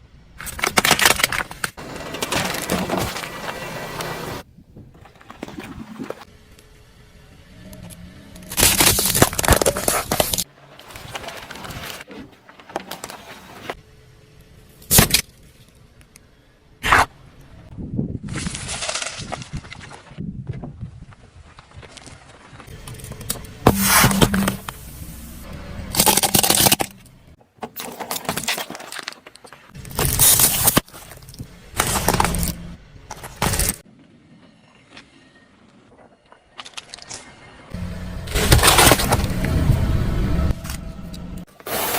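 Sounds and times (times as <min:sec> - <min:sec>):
objects crushed under car tyre: 0:00.4 - 0:04.4, 0:08.5 - 0:13.8, 0:38.3 - 0:39.6
brittle things crunching under tyre: 0:00.4 - 0:06.3, 0:08.4 - 0:13.8, 0:18.2 - 0:20.2, 0:25.9 - 0:33.9, 0:38.2 - 0:39.9.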